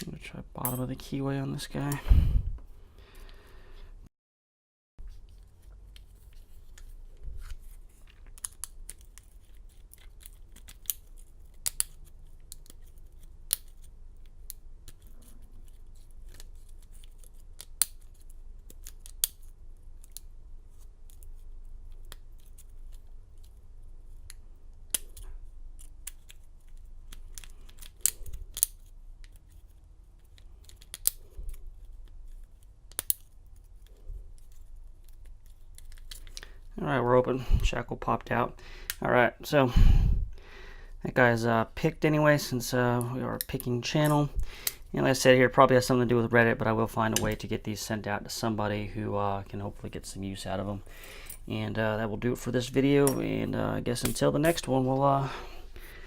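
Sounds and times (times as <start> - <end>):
lock pick clicking and scraping: 30.2 - 36.5.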